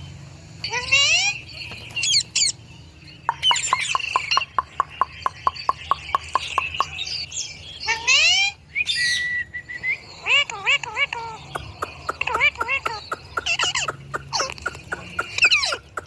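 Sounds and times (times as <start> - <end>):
parrot squawking: 0.6 - 2.6, 3.3 - 16.0
parrot chirps: 0.7 - 2.6, 3.3 - 16.0
parrot clicking notes: 3.3 - 7.0, 11.6 - 16.0.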